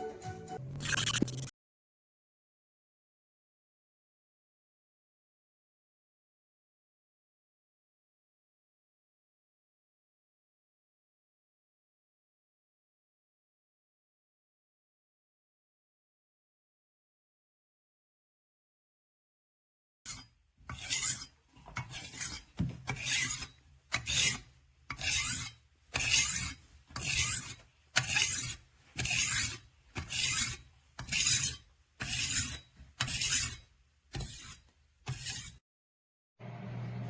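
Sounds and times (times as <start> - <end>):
knife scraping on sharpener: 0.7 - 1.5, 20.1 - 35.6.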